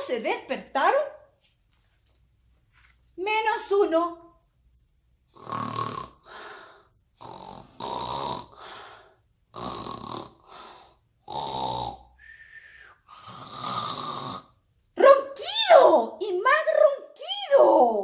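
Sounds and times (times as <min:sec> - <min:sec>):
loud snoring: 0:05.3 - 0:14.6.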